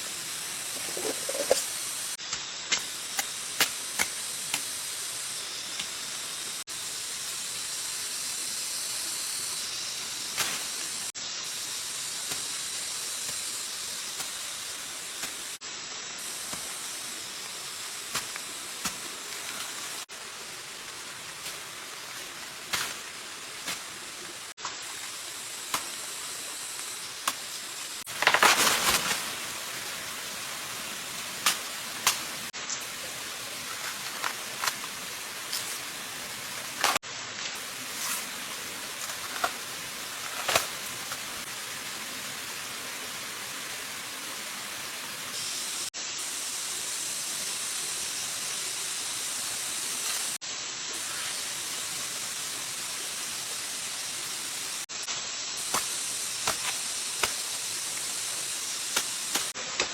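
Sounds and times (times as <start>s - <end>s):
running water hiss: 0.0s - 59.9s.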